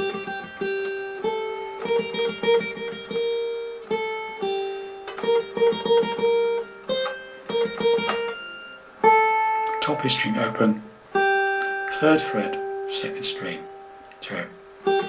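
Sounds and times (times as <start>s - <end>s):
acoustic guitar melody with trills: 0.0s - 15.0s.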